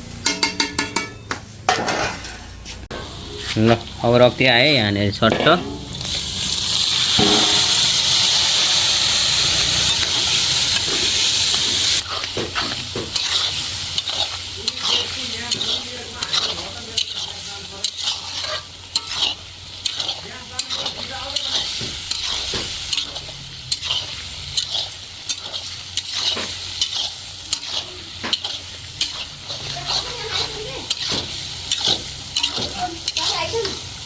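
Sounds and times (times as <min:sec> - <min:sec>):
food sizzling in a pan: 0:02.7 - 0:34.0
spatula scraping a pan: 0:05.3 - 0:34.0
loud hiss: 0:05.8 - 0:12.0.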